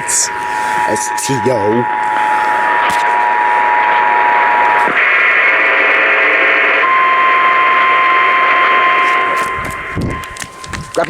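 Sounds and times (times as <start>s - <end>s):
two-tone attention signal: 0.0s - 5.0s
radio static: 0.0s - 11.0s
steady warning alarm tone: 0.0s - 11.0s.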